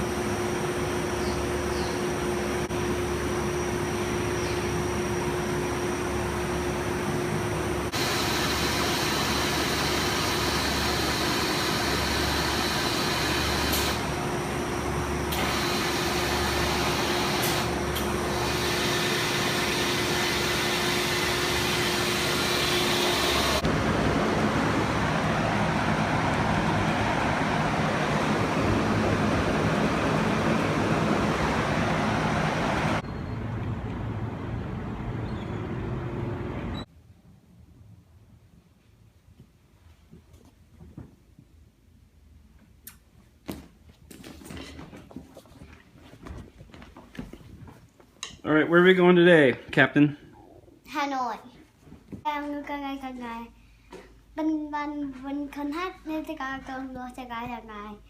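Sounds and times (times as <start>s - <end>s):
loud mechanical running noise: 0.0s - 36.9s.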